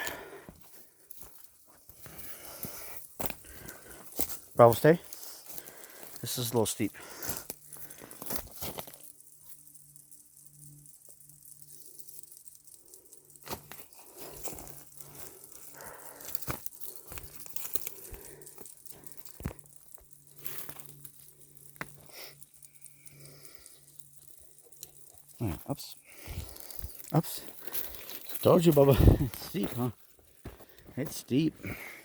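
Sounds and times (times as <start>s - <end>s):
footsteps crunching on loose ground: 26.3s - 32.0s.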